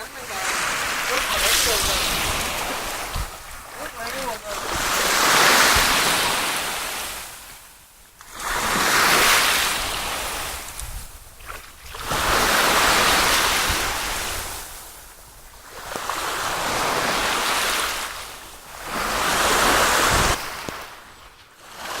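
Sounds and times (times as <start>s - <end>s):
waves washing in: 0.0s - 22.0s.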